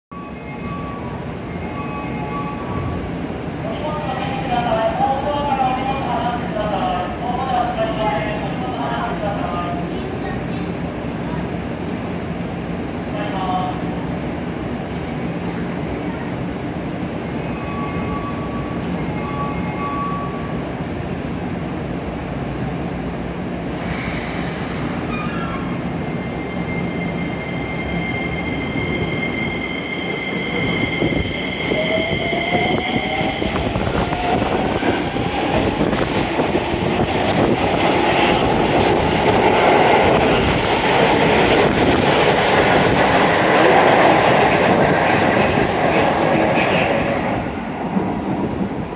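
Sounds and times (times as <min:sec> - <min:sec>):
train cars running noise: 0:00.1 - 0:48.9
steady high tones: 0:24.6 - 0:35.3.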